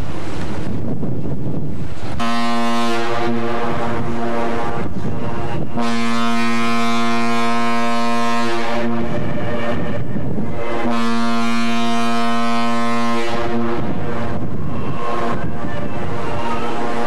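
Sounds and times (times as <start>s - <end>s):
ship's horn blasts: 1.9s - 17.0s.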